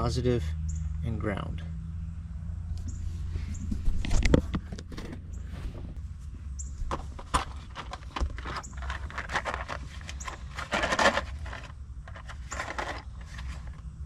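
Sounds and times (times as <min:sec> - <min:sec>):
steady low hum: 0:00.0 - 0:14.0
rustle: 0:02.8 - 0:14.0.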